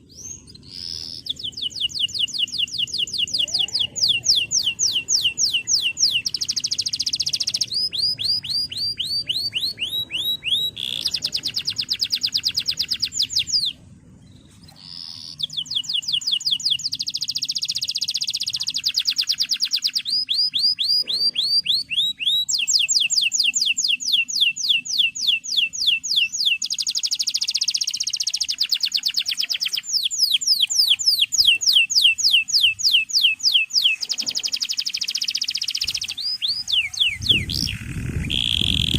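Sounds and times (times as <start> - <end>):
canary singing trills: 0.0 - 38.9.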